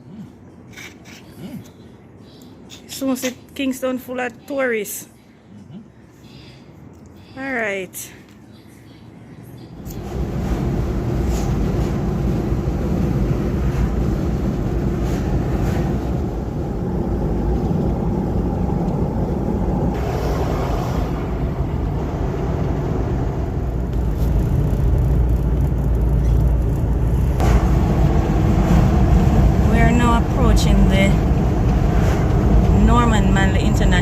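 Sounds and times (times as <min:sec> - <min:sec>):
car road and wind noise: 0:09.8 - 0:34.0.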